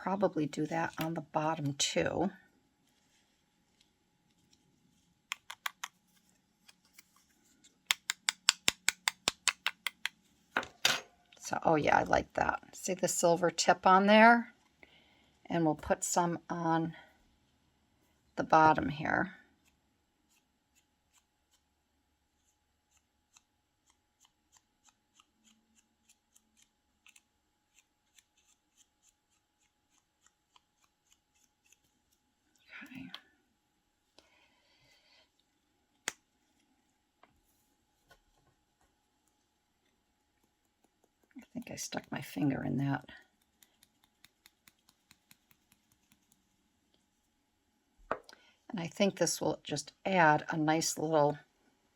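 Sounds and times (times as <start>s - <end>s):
sharp tapping of craft tool: 7.9s - 11.0s.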